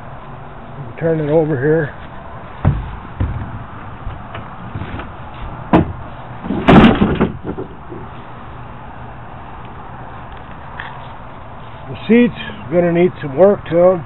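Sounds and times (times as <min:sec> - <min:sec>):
canoe hull knocking and thumping: 0:02.6 - 0:05.1, 0:05.7 - 0:06.0.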